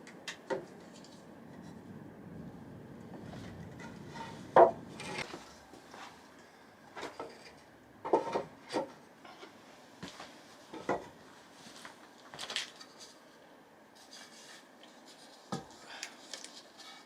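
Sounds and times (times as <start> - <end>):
objects knocking and clattering: 3.2 - 5.3, 10.7 - 11.2.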